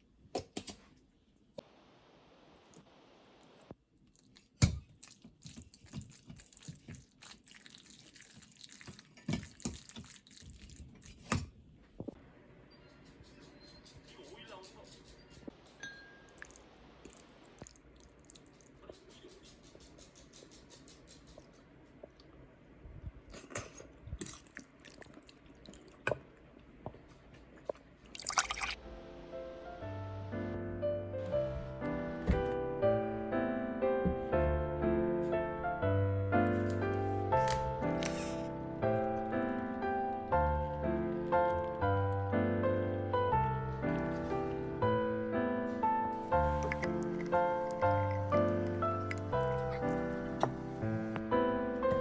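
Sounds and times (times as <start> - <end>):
water dripping and trickling: 4.2 - 11.3, 28.0 - 28.8.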